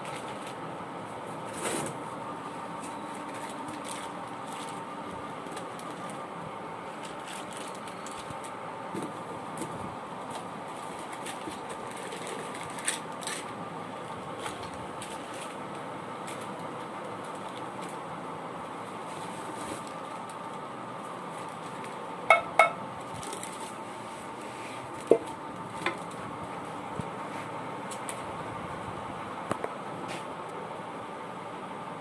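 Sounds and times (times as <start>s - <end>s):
mechanical hum: 0.0s - 32.0s.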